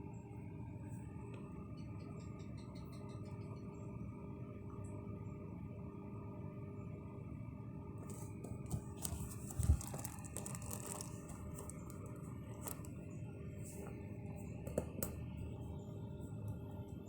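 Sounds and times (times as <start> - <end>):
rustling and soft clicks: 8.1 - 13.0.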